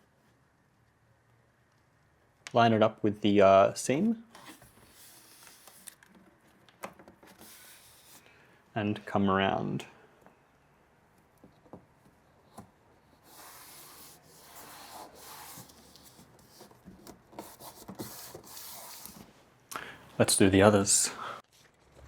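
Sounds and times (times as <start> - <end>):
hands rubbing paper tape: 4.4 - 6.1, 7.3 - 8.2, 13.0 - 16.8, 17.4 - 19.3.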